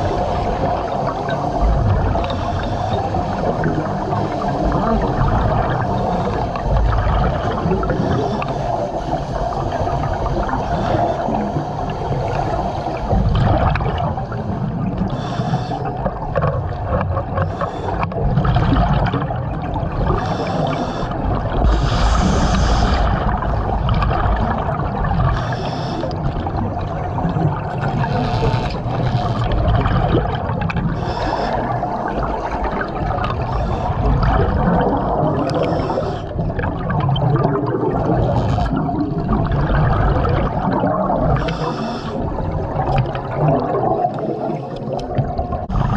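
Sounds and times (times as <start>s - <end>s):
rush of air and water: 0.0s - 45.9s
bubbling exhaust: 15.8s - 28.1s.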